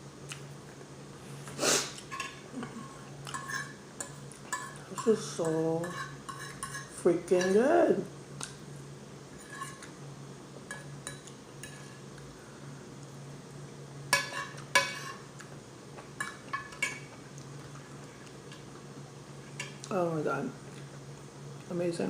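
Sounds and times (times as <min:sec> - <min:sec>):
low steady hum: 0:00.0 - 0:22.0
fork clinking on a plate: 0:03.2 - 0:05.1, 0:14.1 - 0:15.2.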